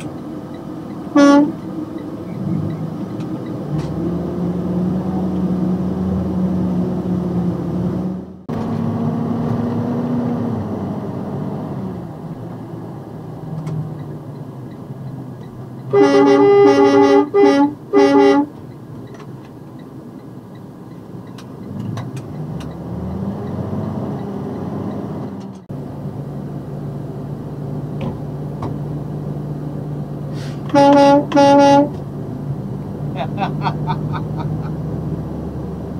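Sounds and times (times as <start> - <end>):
truck engine and road noise: 0.0 - 35.9
truck air horn blasts: 1.1 - 1.6, 15.9 - 18.6, 30.3 - 32.0.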